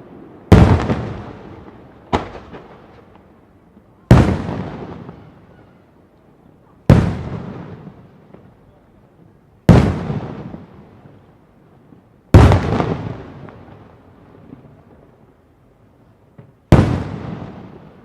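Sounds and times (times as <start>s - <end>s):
firework bombs booming: 0.0s - 3.2s, 4.0s - 5.8s, 6.9s - 8.5s, 9.7s - 11.0s, 12.3s - 13.8s, 16.7s - 18.0s.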